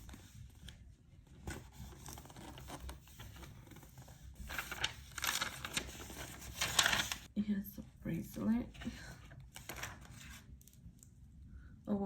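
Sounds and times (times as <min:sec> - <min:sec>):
packaging crinkling: 0:04.6 - 0:07.3.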